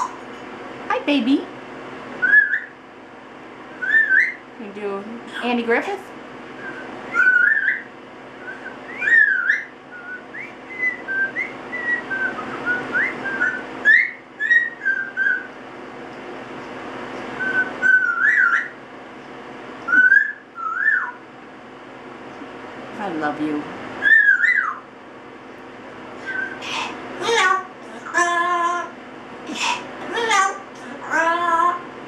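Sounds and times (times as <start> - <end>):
parrot whistling a tune: 2.2 - 2.8, 3.8 - 4.4, 6.6 - 15.5, 17.4 - 18.8, 19.8 - 21.2, 24.0 - 24.8, 26.2 - 26.6.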